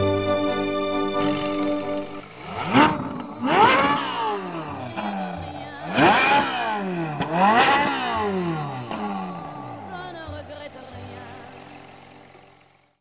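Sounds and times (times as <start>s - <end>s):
car engine revving past: 0.0s - 10.1s.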